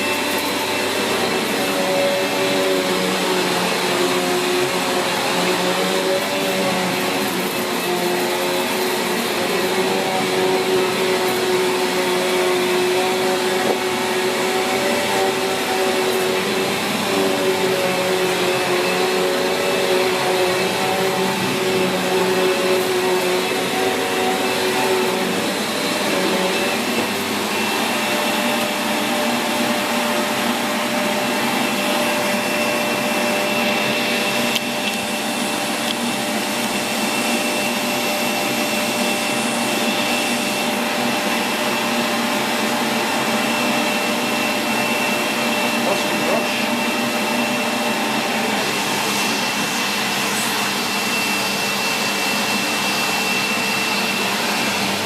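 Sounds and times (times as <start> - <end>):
vacuum cleaner running: 0.0 - 55.0.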